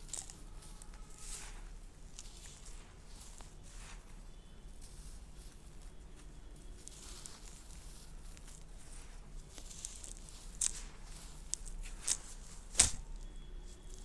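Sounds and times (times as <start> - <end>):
dirt crumbling and crunching: 0.0 - 14.0.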